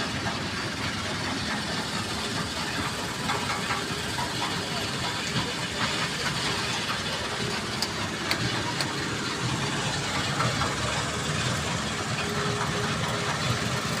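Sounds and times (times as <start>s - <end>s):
engine running: 0.0s - 14.0s.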